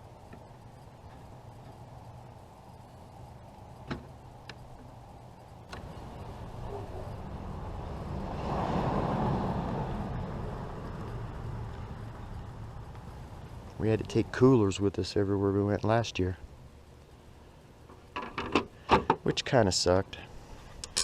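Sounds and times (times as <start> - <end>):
vehicle passing: 5.8 - 13.6.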